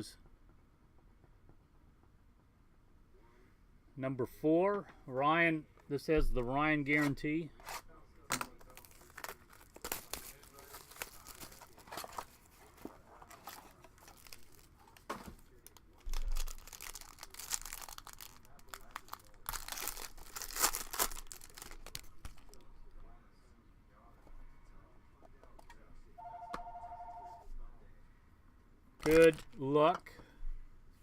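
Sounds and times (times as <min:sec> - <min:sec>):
cards rustling and clicking: 0:06.9 - 0:22.6, 0:29.0 - 0:29.6
wrapper tearing and crinkling: 0:07.6 - 0:12.4, 0:13.2 - 0:22.5.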